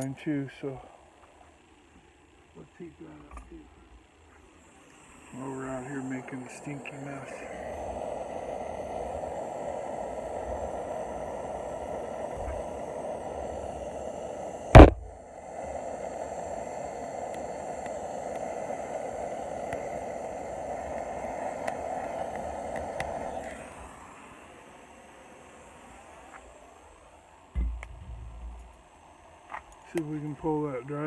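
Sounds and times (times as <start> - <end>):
torch flame hissing: 0.0 - 31.0
loud sharp knock: 14.8 - 15.1, 27.6 - 28.6.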